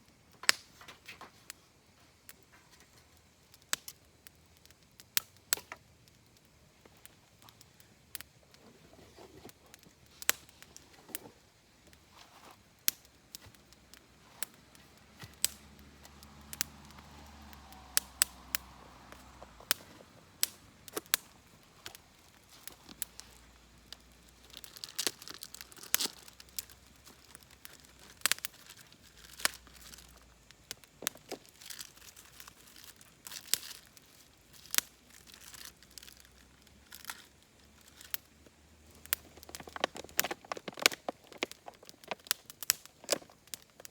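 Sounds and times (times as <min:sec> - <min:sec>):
low hiss: 0:00.0 - 0:43.9
wood fire crackling: 0:00.0 - 0:43.9.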